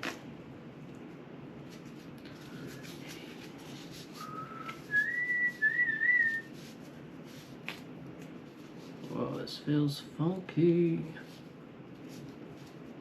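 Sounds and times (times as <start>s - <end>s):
person whistling: 4.1s - 6.5s.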